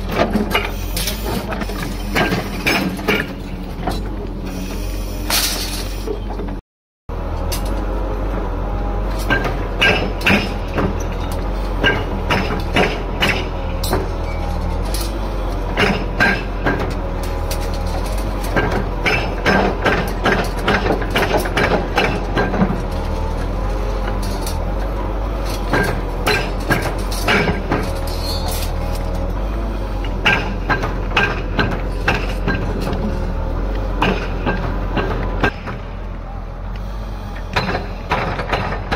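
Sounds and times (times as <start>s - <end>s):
debris clanking and crunching: 0.0s - 4.4s, 5.2s - 6.6s, 9.0s - 35.9s, 37.5s - 38.9s
heavy machine engine running: 0.0s - 38.9s.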